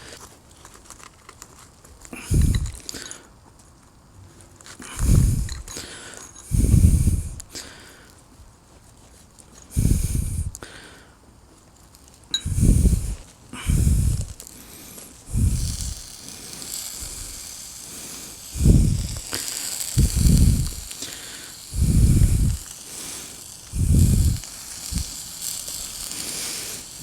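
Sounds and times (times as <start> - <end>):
batter sizzling on hot plate: 2.2 - 3.2, 4.9 - 8.0, 9.6 - 10.8, 11.9 - 27.0
low rumbles: 18.6 - 19.3, 20.0 - 20.9, 21.8 - 22.6.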